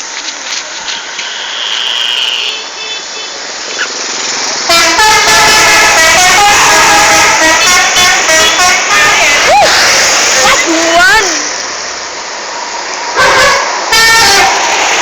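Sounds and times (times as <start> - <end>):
multi-tone bus horn tune: 2.2 - 3.9, 4.7 - 9.5, 13.2 - 14.8.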